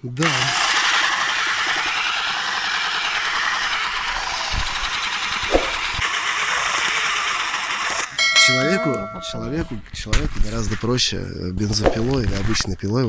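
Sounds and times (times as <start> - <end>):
electric drill boring into wood: 0.0 - 8.2.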